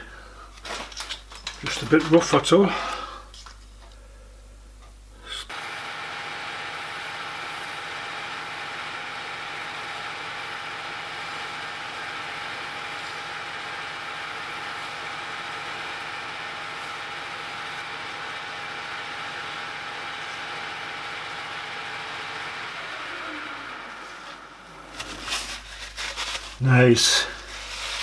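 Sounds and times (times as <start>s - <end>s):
metal lathe running: 5.5s - 25.0s.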